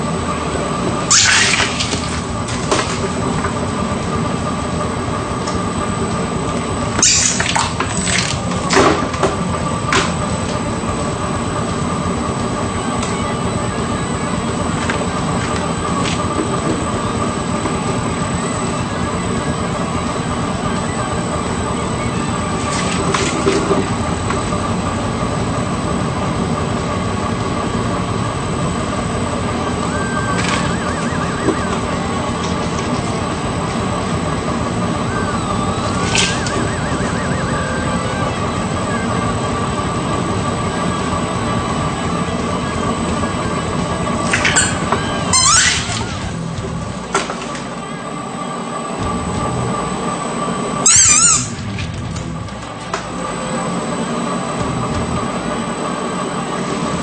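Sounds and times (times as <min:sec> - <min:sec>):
shredder motor whine: 0:00.0 - 0:57.0
shredder grinding bursts: 0:01.0 - 0:03.4, 0:06.9 - 0:19.5.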